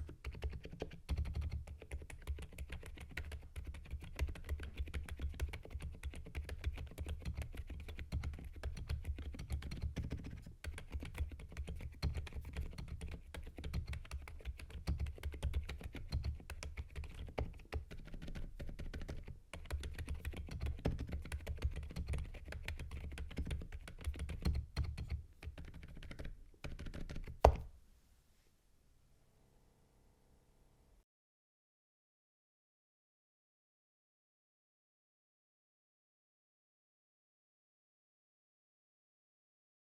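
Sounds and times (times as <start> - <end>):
fast typing on mechanical keyboard: 0.0 - 27.4.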